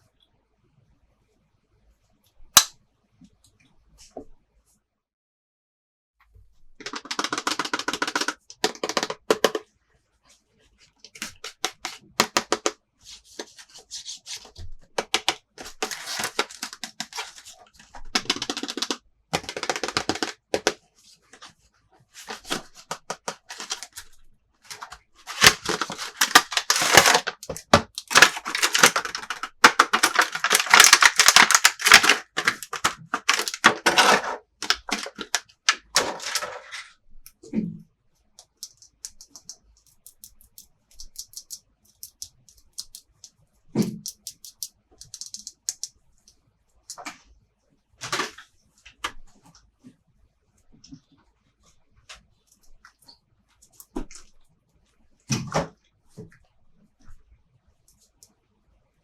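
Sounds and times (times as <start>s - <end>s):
plastic toy pieces clicking: 6.8s - 9.6s, 15.0s - 17.5s, 18.1s - 20.8s, 22.5s - 24.0s, 24.7s - 36.8s, 38.4s - 43.3s, 43.9s - 45.9s.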